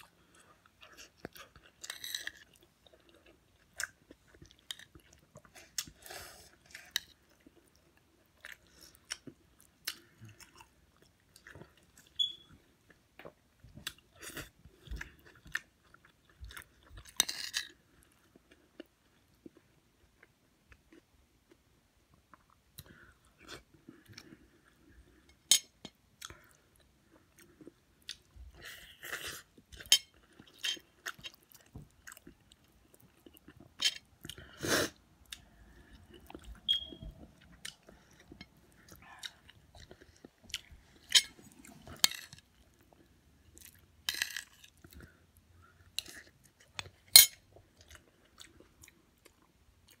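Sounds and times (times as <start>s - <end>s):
chewing with mouth smacks: 26.2s - 34.5s, 35.2s - 50.0s.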